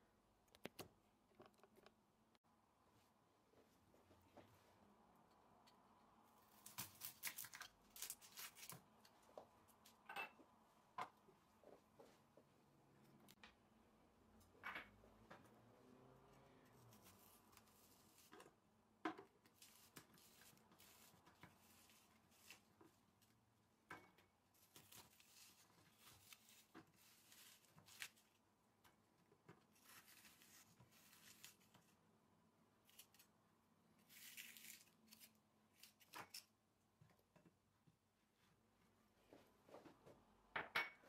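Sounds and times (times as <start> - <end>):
crisp crackles of peeling: 6.6 - 8.9, 34.0 - 36.5.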